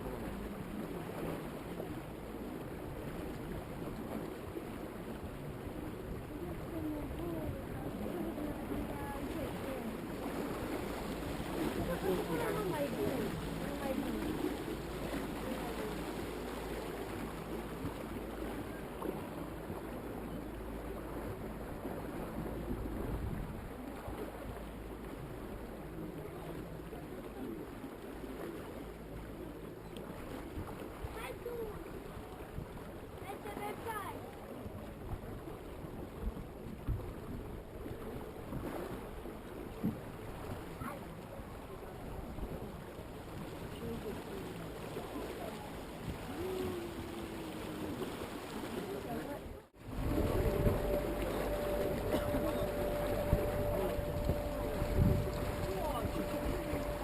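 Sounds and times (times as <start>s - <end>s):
low steady hum: 0.0s - 57.0s
water rushing along boat hull: 0.0s - 57.0s
wind buffeting microphone: 21.0s - 24.6s, 49.8s - 57.0s.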